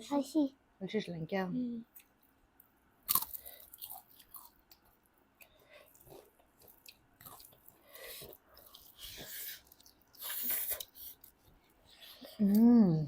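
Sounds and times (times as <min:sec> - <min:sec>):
people chewing and biting: 0:03.0 - 0:12.8.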